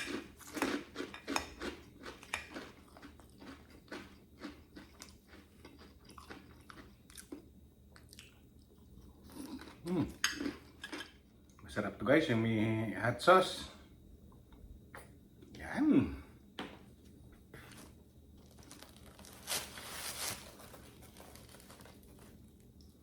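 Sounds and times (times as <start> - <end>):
crunching and chewing salad: 0.0 - 11.8, 17.0 - 23.0.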